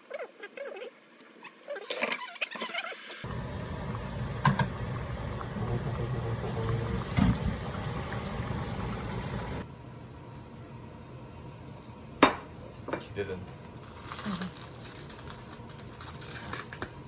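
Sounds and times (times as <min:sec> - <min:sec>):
water rushing: 0:03.1 - 0:09.6.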